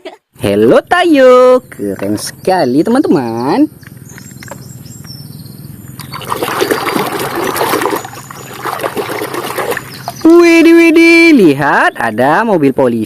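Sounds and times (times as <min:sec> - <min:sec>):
water splashing and trickling: 0:06.0 - 0:10.8.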